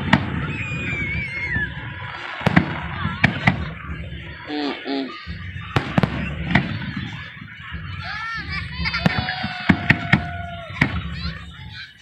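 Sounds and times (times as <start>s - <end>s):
fireworks bangs: 0.0s - 12.0s
voices calling: 0.0s - 12.0s
low rumble: 5.2s - 11.8s.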